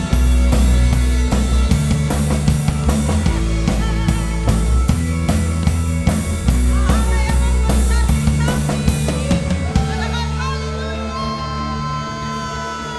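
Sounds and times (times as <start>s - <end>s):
drum kit hits: 0.0s - 9.9s
worship band playing: 0.0s - 12.9s.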